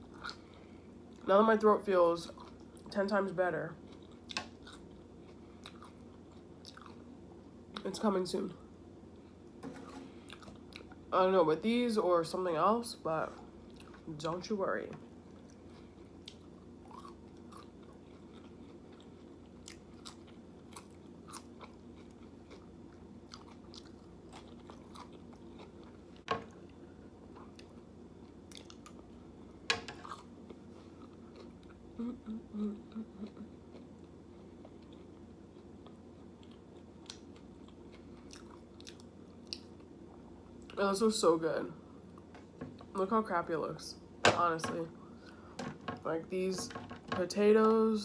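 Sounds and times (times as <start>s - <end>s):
chewing soft food: 3.8s - 7.1s, 10.2s - 11.0s, 15.3s - 29.2s, 30.0s - 40.8s.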